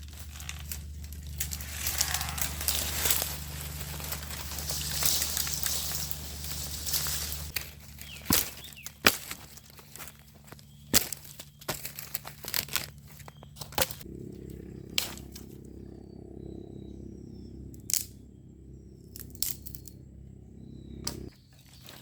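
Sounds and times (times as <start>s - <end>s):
footsteps on dry leaves: 0.0s - 14.1s
steady low hum: 0.0s - 22.0s
faint bird chirps: 13.2s - 22.0s.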